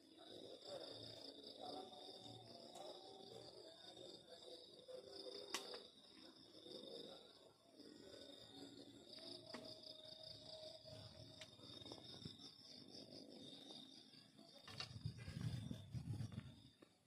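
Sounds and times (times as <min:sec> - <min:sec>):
crickets chirping: 0:00.0 - 0:17.0
small clicks: 0:05.5 - 0:05.8.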